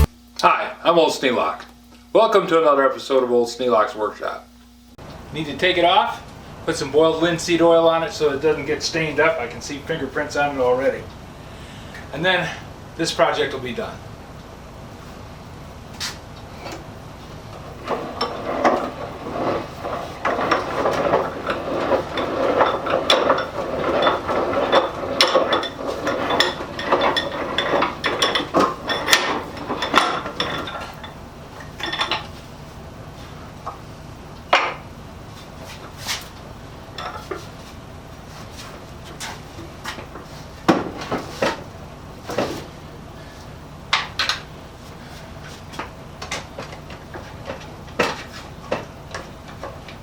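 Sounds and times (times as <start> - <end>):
wood and metal parts knocking: 17.8 - 32.3, 46.2 - 50.0.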